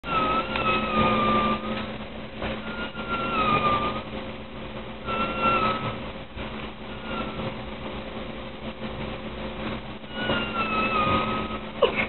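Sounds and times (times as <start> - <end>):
woman whistling in her sleep: 0.0 - 1.8, 2.6 - 4.1, 5.0 - 6.0, 6.9 - 7.4, 10.1 - 12.0
steady low hum: 0.0 - 12.0.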